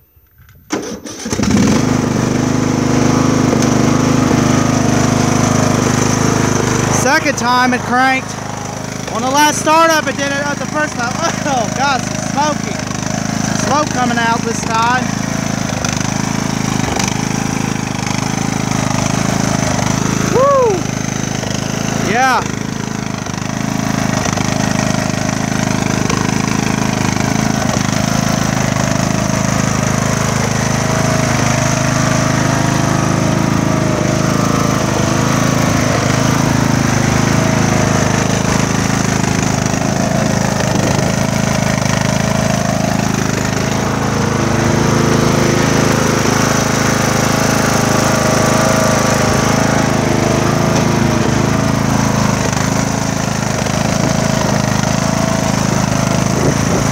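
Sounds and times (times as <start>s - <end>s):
mower engine running with misfire: 0.0s - 56.9s.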